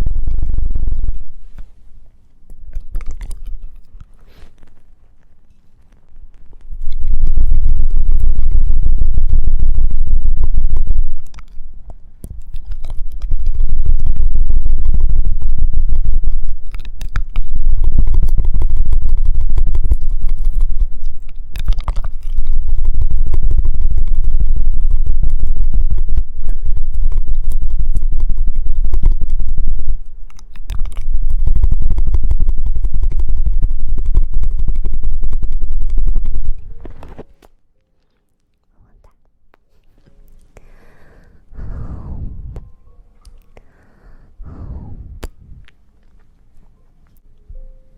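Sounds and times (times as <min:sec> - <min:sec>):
scraping against microphone: 0:03.3 - 0:06.7, 0:35.9 - 0:37.5.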